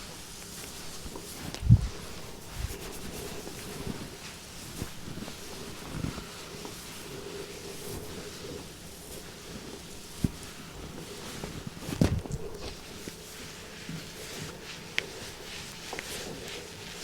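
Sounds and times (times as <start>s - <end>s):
hands rubbing on bare skin: 0.3s - 17.0s
soft thumps: 11.8s - 12.9s.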